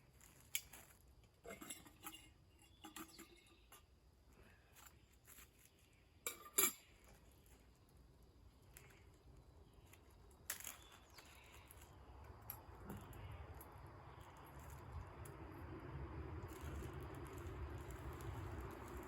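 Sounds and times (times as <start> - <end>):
small hard objects clicking: 16.4 - 19.0.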